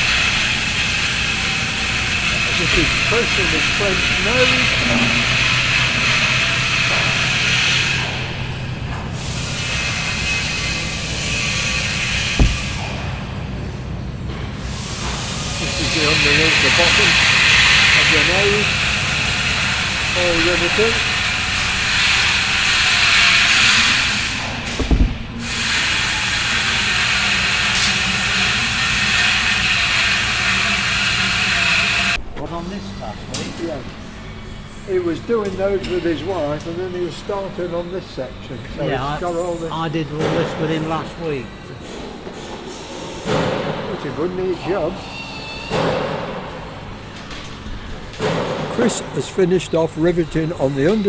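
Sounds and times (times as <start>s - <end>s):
machinery hiss: 0.0s - 51.0s
machinery low hum: 0.0s - 51.0s
thump: 12.2s - 13.1s, 22.0s - 25.7s.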